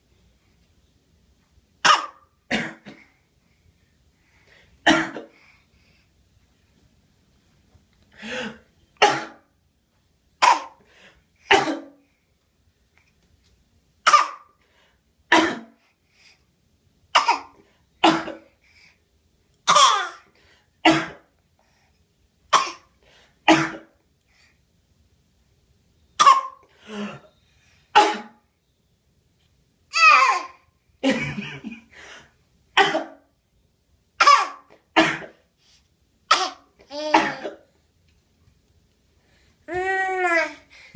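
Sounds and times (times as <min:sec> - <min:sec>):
baby fake coughing: 0:01.8 - 0:03.1, 0:04.9 - 0:05.4, 0:09.0 - 0:09.5, 0:10.4 - 0:10.8, 0:11.5 - 0:12.0, 0:14.0 - 0:14.5, 0:17.2 - 0:18.5, 0:19.7 - 0:21.3, 0:22.5 - 0:22.9, 0:23.5 - 0:23.9, 0:26.2 - 0:27.3, 0:28.0 - 0:28.4, 0:29.9 - 0:31.2, 0:32.8 - 0:33.2, 0:34.2 - 0:35.4, 0:36.3 - 0:37.7.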